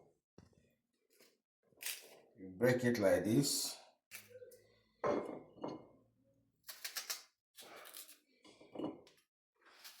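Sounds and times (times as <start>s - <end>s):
dry onion skin crackling: 6.6s - 8.2s.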